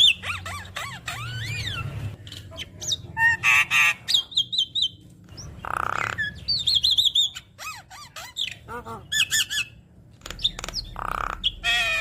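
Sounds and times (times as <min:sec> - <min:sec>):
bird singing varied song: 0:00.0 - 0:12.0.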